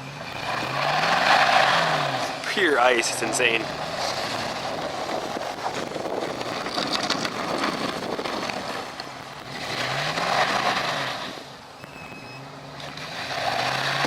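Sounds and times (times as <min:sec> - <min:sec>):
truck engine revving: 0:00.0 - 0:14.0
steady rushing noise: 0:01.6 - 0:11.7.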